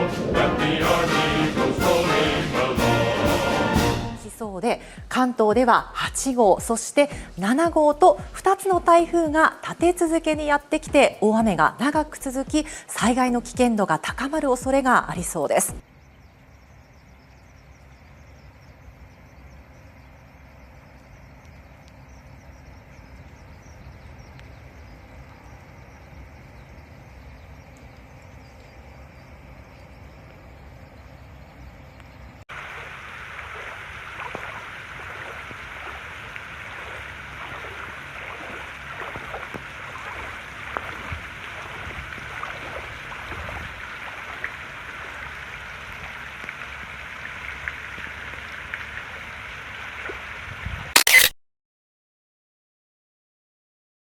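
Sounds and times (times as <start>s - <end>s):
heavy rain falling: 0.0s - 4.2s, 32.5s - 50.0s
low outdoor rumbling: 0.0s - 50.5s
raindrops tapping on surfaces: 32.5s - 50.2s.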